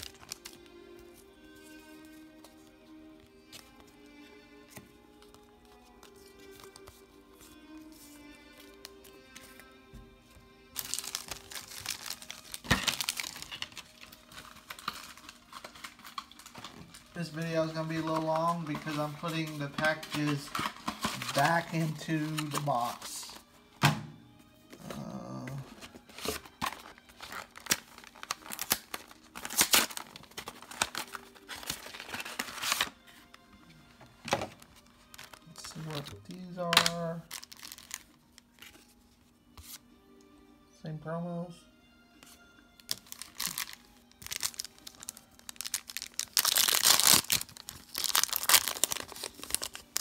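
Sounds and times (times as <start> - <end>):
foil wrappers crinkling: 0.0 - 0.7, 10.7 - 23.4, 25.9 - 33.0, 34.3 - 38.9, 42.8 - 50.0
faint background music: 0.0 - 50.0
foil wrapper tearing: 10.8 - 19.0, 26.6 - 33.0, 35.1 - 38.6, 42.8 - 50.0.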